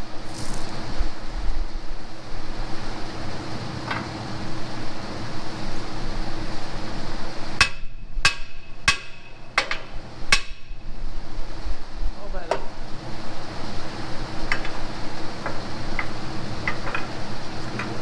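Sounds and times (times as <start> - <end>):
hammer striking steel: 7.6 - 9.7.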